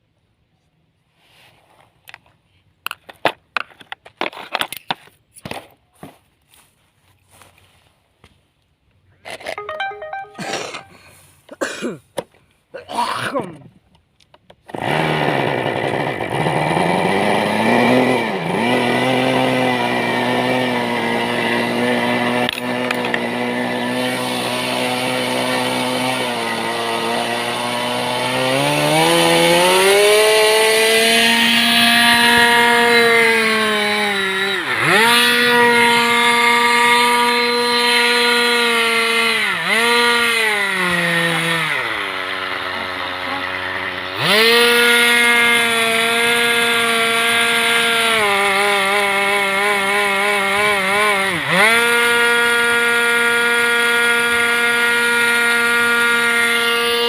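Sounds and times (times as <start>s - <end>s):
model airplane engine buzzing: 14.8s - 57.0s.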